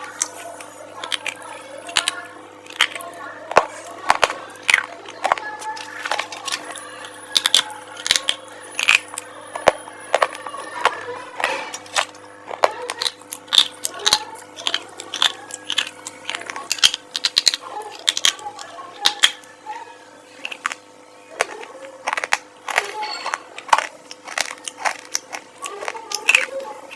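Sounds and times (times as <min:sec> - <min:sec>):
crisp food crunching: 0:00.0 - 0:26.9.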